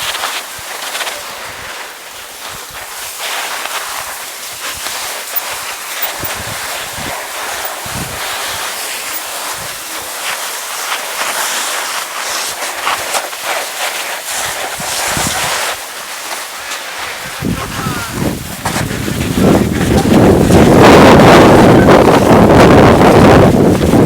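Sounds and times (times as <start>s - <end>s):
wind buffeting microphone: 4.6s - 10.1s, 17.1s - 24.0s.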